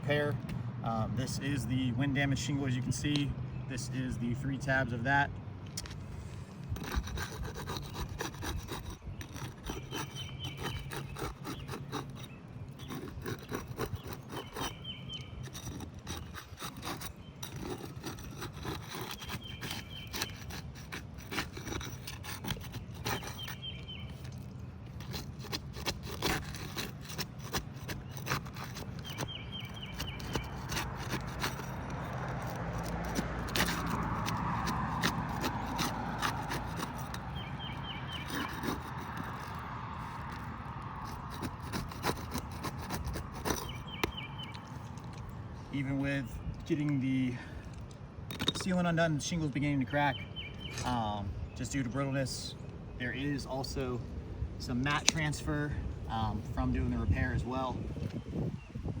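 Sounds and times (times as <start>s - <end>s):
shingles scraping and crackling: 5.8s - 49.3s.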